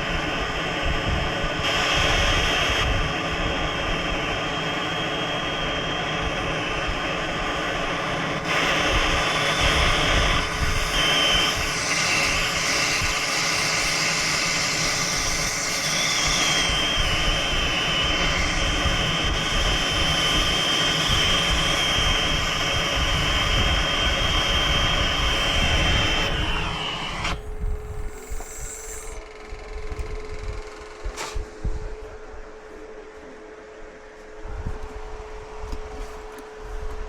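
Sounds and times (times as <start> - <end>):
torch flame hissing: 0.3 - 29.2.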